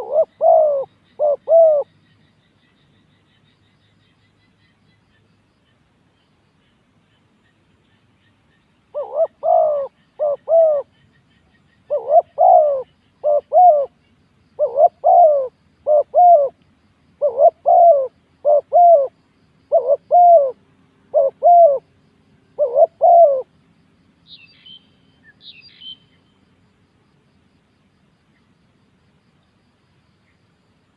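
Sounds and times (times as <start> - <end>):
dove cooing: 0.0 - 1.9, 8.9 - 11.0, 11.8 - 14.0, 14.6 - 16.6, 17.2 - 21.9, 22.5 - 23.5.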